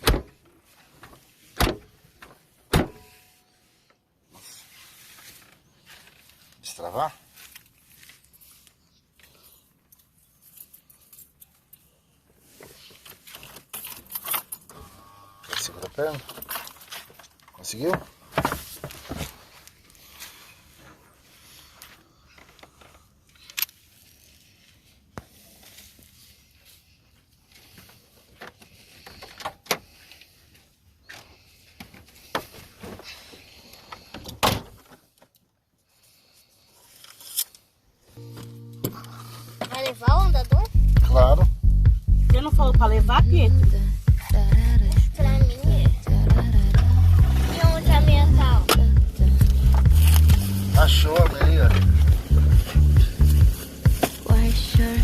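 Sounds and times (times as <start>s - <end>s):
keys jangling: 13.4s - 14.8s.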